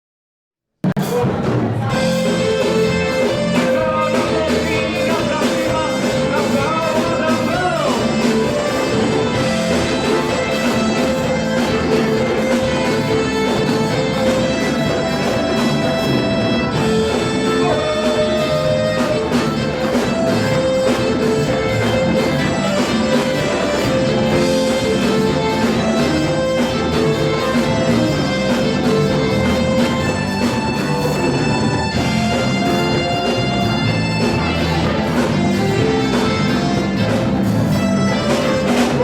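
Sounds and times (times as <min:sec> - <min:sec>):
instrumental country music: 0:01.9 - 0:39.0.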